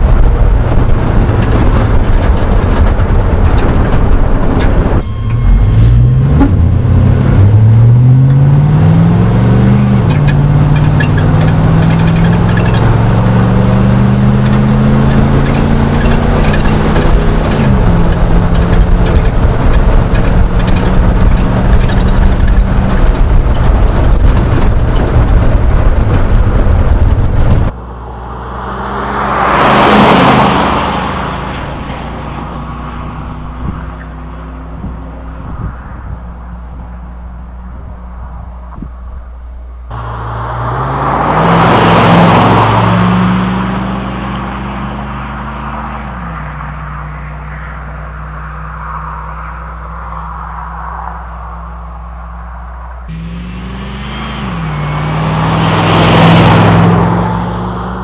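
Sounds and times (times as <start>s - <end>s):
truck engine accelerating: 0.0s - 50.4s, 52.8s - 58.0s
vehicle passing by: 27.7s - 36.9s, 39.9s - 51.8s, 53.1s - 58.0s.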